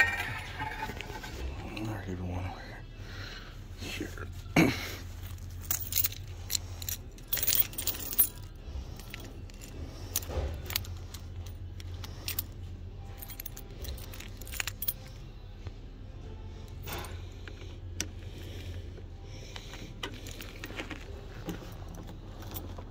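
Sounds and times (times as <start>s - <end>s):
keys jangling: 5.2s - 15.3s.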